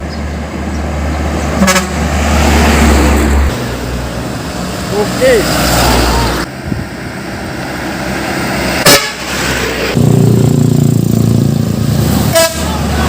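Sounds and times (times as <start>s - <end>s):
road traffic: 0.0s - 13.0s
truck air horn: 1.6s - 2.2s, 8.8s - 9.7s, 12.2s - 13.0s.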